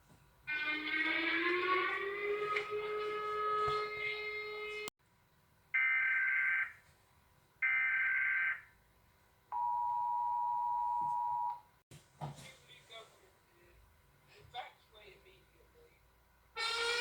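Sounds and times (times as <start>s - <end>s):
buzzy rising tone: 0.5s - 4.9s.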